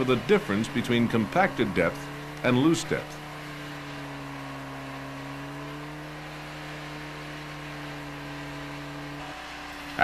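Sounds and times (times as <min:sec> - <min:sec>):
diesel engine humming: 0:00.0 - 0:10.0.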